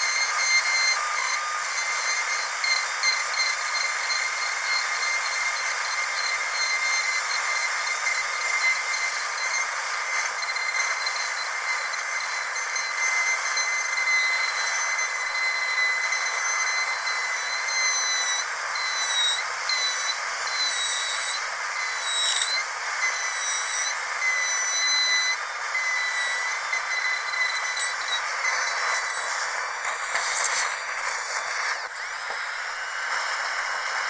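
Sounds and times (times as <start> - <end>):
dentist's drill whining: 0.0 - 34.0
steady hiss: 18.4 - 34.0.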